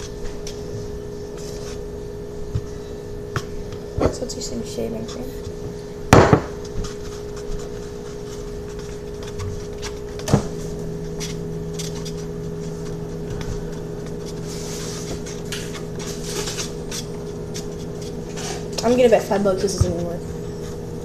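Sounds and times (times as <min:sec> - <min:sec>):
steady hum: 0:00.0 - 0:21.0
sharp knock: 0:06.2 - 0:06.6.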